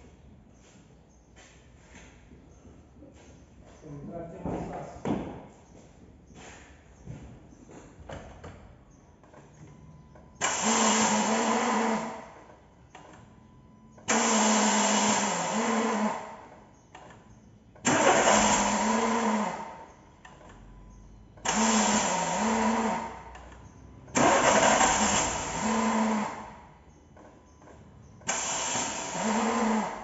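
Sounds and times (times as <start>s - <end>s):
starter motor cranking: 10.3s - 13.1s, 14.0s - 16.7s, 17.8s - 20.5s, 21.4s - 26.7s, 28.2s - 30.0s.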